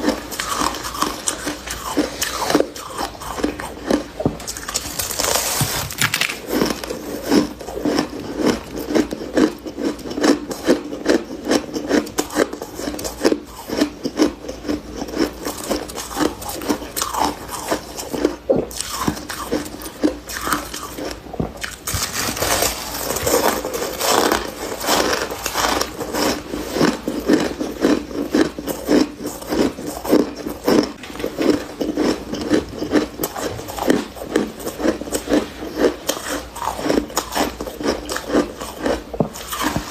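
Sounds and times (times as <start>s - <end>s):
crunchy chewing of frost: 0.0s - 39.9s.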